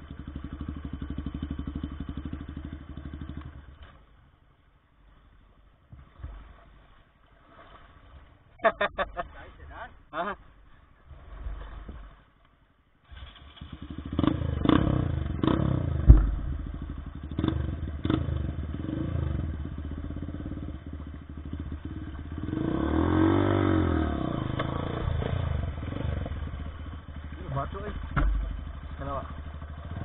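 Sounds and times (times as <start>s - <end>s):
motorcycle engine revving: 0.0s - 4.0s, 13.0s - 30.0s
knocks and clatter: 15.4s - 17.5s, 28.0s - 28.9s.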